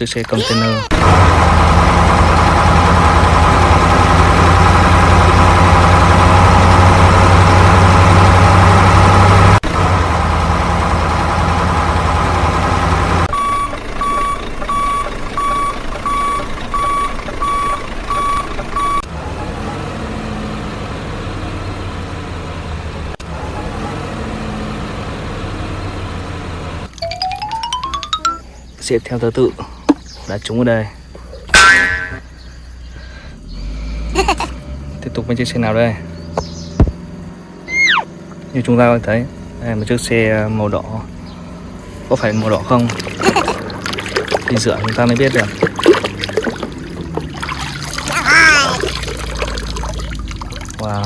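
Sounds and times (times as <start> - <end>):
diesel truck engine rumble: 0.0 - 51.0
reversing beeps: 13.3 - 19.0.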